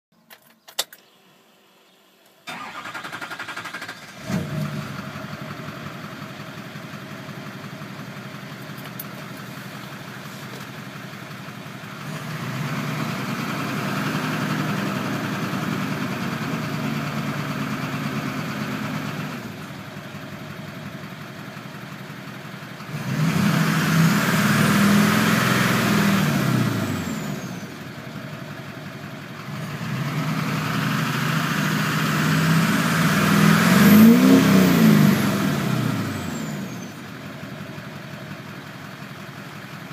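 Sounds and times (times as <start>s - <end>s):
diesel engine cranking: 2.4s - 7.8s, 22.8s - 28.0s
diesel engine idling and revving: 2.5s - 39.9s.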